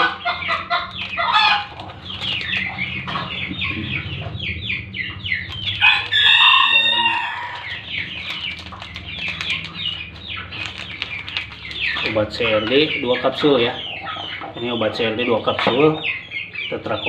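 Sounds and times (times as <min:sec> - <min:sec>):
chickens clucking: 0:00.0 - 0:17.0
high falling chirps: 0:00.3 - 0:13.0
rooster crowing: 0:05.7 - 0:07.9.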